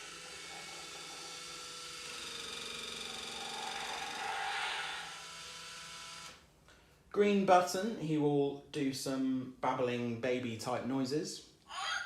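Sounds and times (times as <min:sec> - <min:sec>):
small electric motors whirring: 0:00.0 - 0:06.4.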